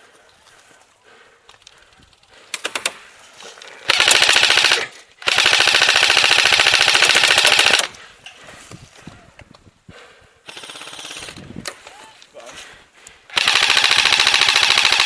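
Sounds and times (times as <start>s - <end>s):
airsoft rifle firing bursts: 3.8s - 7.9s, 10.5s - 11.4s, 13.3s - 15.0s.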